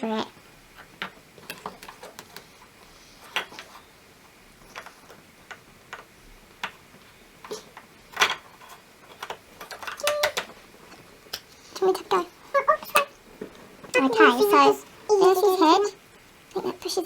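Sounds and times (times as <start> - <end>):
plastic toy pieces clicking: 7.4 - 10.6.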